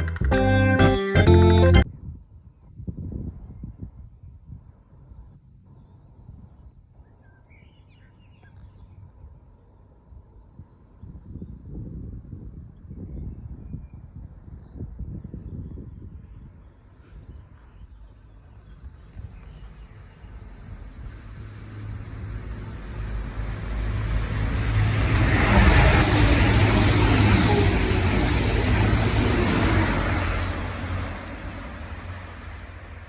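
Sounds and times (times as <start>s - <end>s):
train passing at speed: 19.0s - 33.0s.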